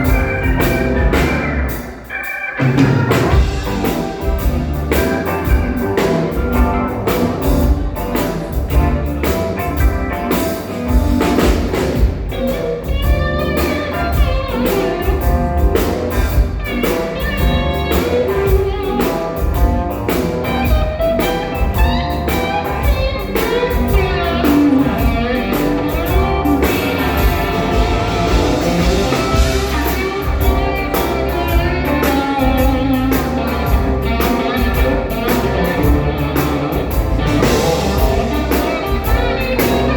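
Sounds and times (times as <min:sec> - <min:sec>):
blues rock band playing: 0:00.0 - 0:39.9
drum kit: 0:00.0 - 0:39.9
guitar: 0:00.0 - 0:39.9.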